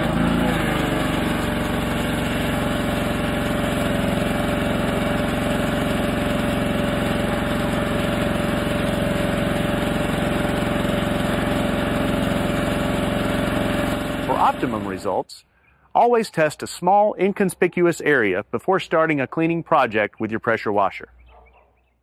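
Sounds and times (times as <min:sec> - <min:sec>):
pressure washer engine running: 0:00.0 - 0:15.2.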